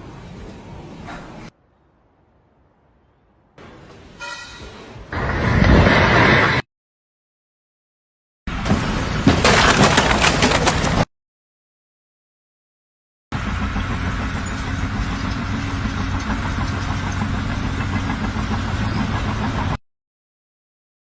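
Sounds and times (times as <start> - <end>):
engine humming steadily: 13.3 - 19.8.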